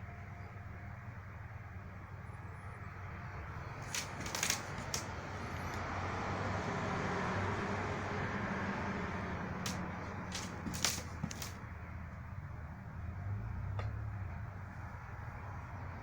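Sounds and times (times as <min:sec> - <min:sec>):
sharp exhaust pops: 0:09.6 - 0:11.6.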